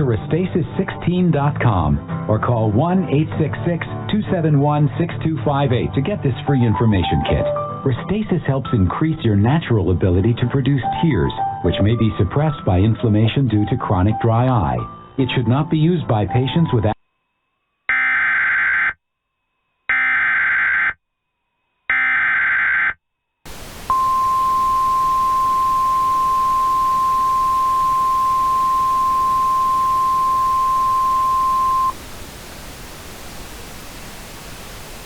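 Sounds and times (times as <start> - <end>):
steady warning alarm tone: 23.5 - 33.2
screeching data tones: 23.5 - 33.8.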